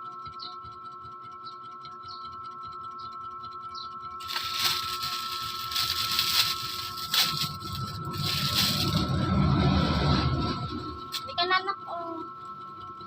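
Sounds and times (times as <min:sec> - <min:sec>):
faint high hum: 0:00.0 - 0:13.0
plastic packaging crinkling: 0:04.2 - 0:09.4.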